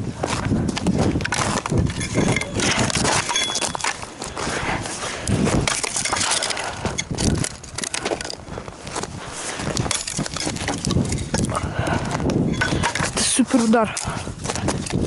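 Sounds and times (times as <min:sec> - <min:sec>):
dry wood crunching and cracking: 0:00.0 - 0:15.0.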